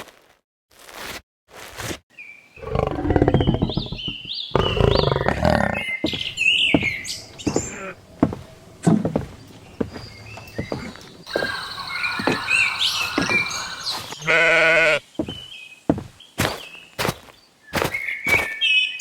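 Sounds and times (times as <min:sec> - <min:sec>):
animal roaring and growling: 0:02.6 - 0:06.0.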